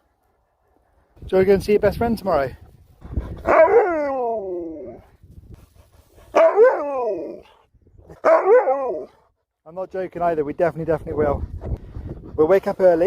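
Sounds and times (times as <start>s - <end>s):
dog howling: 3.5s - 5.1s, 6.4s - 7.5s, 8.2s - 9.2s.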